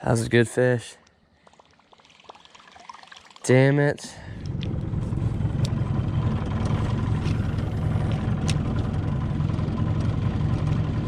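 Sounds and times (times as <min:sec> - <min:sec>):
motorboat engine droning: 0:04.0 - 0:11.0.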